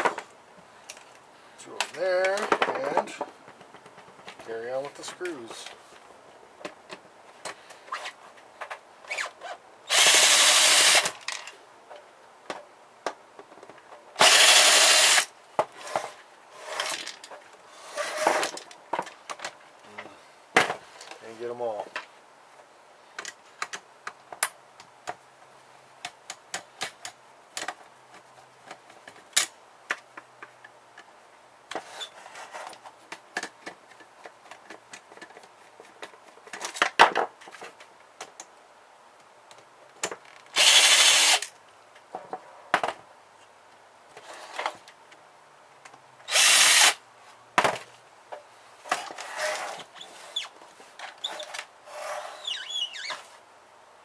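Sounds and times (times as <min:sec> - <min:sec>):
power drill-driver backing out screws: 0:09.9 - 0:11.2, 0:14.2 - 0:15.3, 0:40.6 - 0:41.5, 0:46.3 - 0:47.0.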